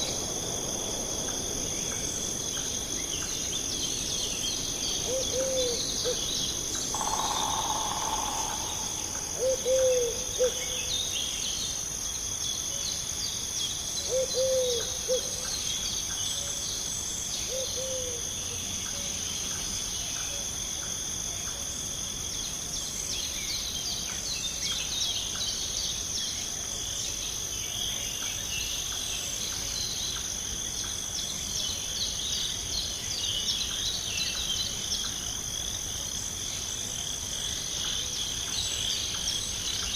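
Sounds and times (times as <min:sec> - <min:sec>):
insects chirring: 0:00.0 - 0:39.9
bird calling: 0:06.9 - 0:10.9.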